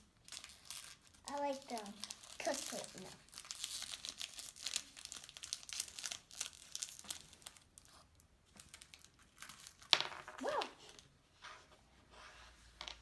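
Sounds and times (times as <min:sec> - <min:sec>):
plastic packaging crinkling: 0:00.2 - 0:09.9.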